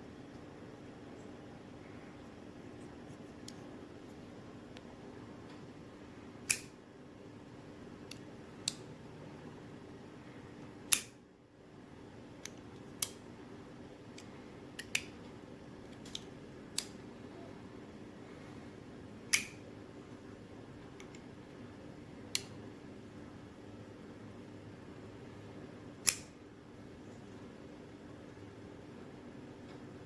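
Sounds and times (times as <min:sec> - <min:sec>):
steady low hum: 0:00.0 - 0:30.0
folding knife blade clicking: 0:06.5 - 0:06.7, 0:10.9 - 0:11.2, 0:26.0 - 0:26.3.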